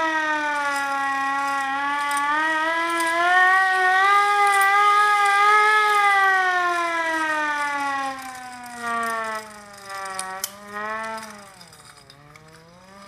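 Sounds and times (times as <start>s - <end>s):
hand-cranked siren wailing: 0.0s - 13.0s.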